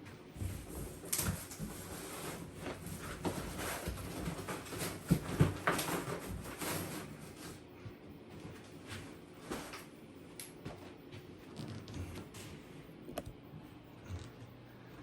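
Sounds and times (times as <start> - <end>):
cardboard box rustling and scraping: 0.4 - 7.6.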